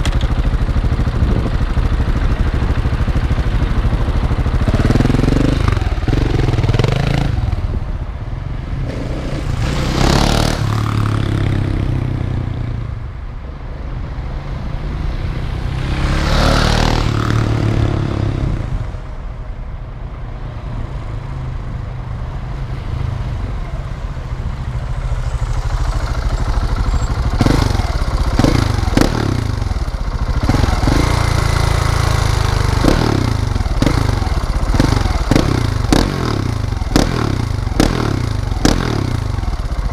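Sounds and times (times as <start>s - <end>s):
motorcycle engine revving: 0.0s - 7.9s, 8.8s - 13.0s, 14.9s - 18.9s, 24.7s - 39.9s.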